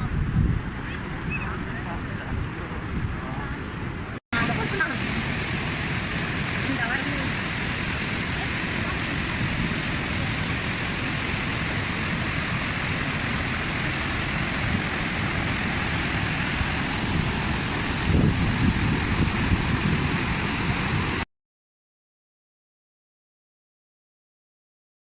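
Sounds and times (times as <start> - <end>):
waterfall rushing: 4.4 - 21.2.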